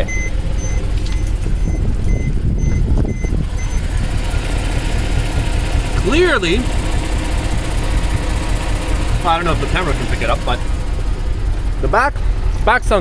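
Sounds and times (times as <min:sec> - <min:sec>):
car warning chime beeping: 0:00.0 - 0:04.0
car engine idling: 0:00.0 - 0:13.0
exhaust popping: 0:00.0 - 0:13.0.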